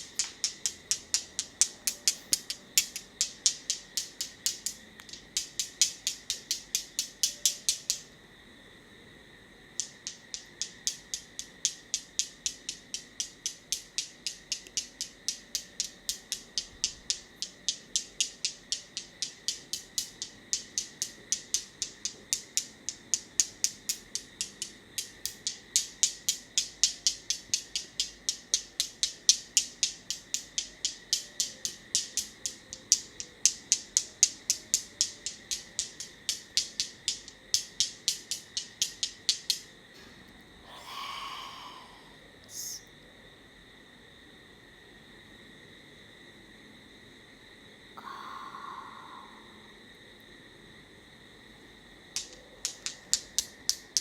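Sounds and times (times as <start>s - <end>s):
crisp rapid clicking: 0.0s - 8.0s, 9.8s - 39.7s, 52.2s - 54.0s.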